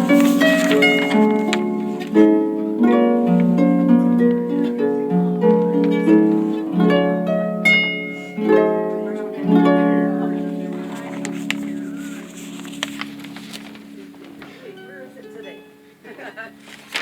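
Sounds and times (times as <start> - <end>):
plucked string instrument melody: 0.0 - 17.0.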